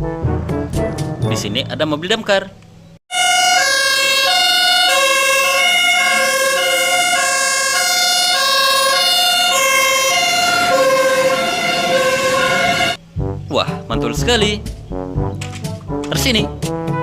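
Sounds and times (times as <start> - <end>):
fire engine siren two-tone: 3.1 - 13.0.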